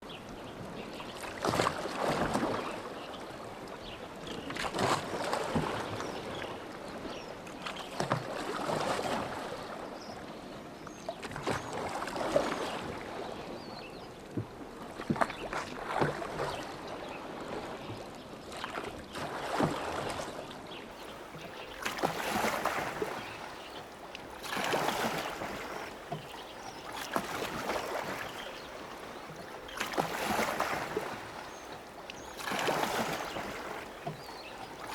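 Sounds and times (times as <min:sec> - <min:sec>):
oars splashing in water: 0:15.0 - 0:16.7, 0:18.5 - 0:20.3, 0:20.9 - 0:34.9.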